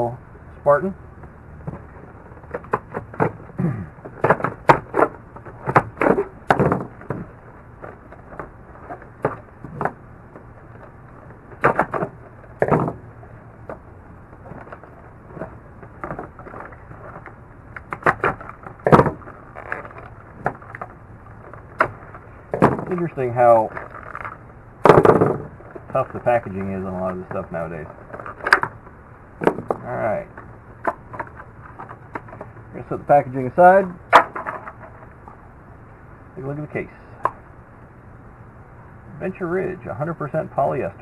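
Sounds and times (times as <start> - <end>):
stiff plastic cracking and snapping: 14.4 - 23.1.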